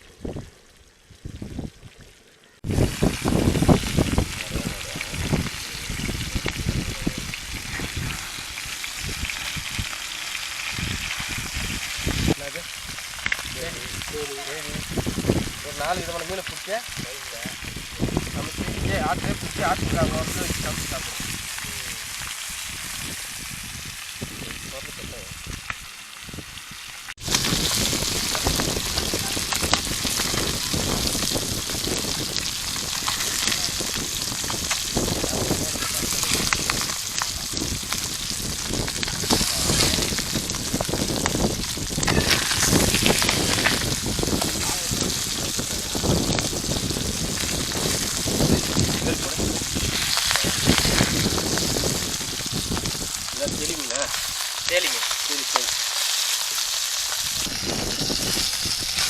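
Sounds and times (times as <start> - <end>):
fish sizzling in hot oil: 2.6 - 59.0.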